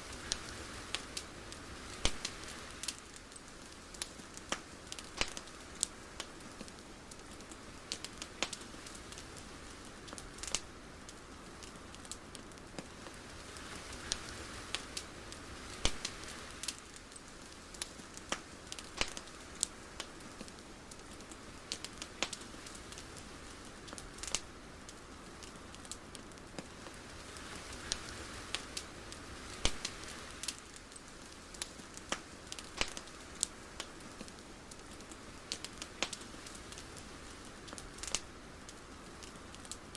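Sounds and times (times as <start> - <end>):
sharp crackles and pops: 0.0 - 39.9
soft hiss: 0.0 - 39.9.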